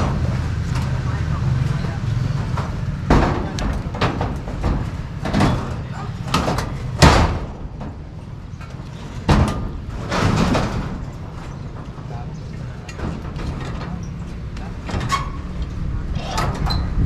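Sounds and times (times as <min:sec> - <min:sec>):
sharp knocks and bangs: 0:02.2 - 0:08.2, 0:09.2 - 0:12.1.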